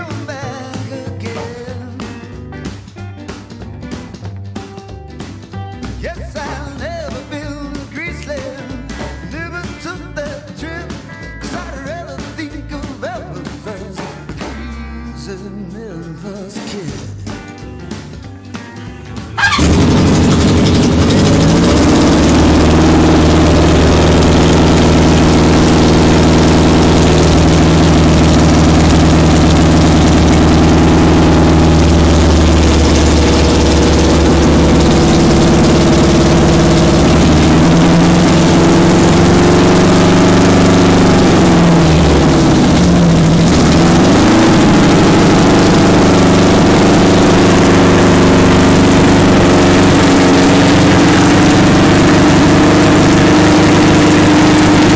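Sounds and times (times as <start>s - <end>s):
motorcycle engine idling: 19.4s - 54.9s.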